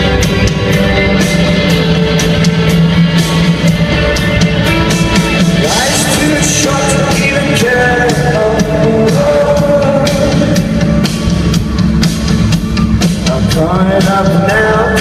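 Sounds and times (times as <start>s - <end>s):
rock band playing live: 0.0s - 15.0s
singer's voice: 5.4s - 15.0s.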